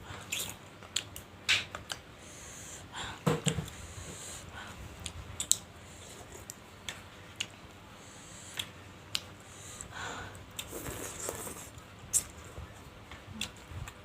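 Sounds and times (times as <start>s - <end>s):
chewing mouth clicks and smacks: 0.3s - 2.0s.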